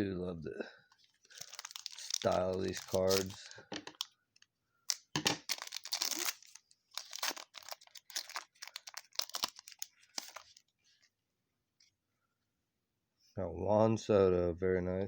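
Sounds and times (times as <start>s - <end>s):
card wrapper crinkling and rustling: 1.0s - 11.0s.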